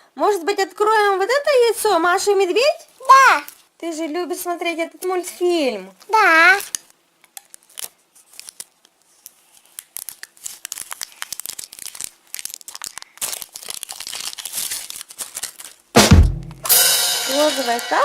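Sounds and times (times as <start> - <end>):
foil wrapper crinkling and tearing: 6.0 - 16.0.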